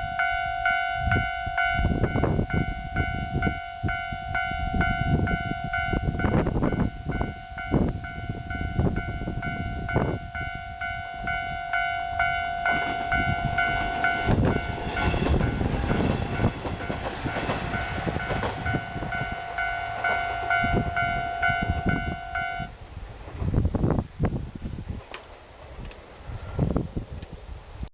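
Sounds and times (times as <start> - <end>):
level crossing warning bell: 0.0 - 22.7
train wheels clacking: 12.2 - 22.0.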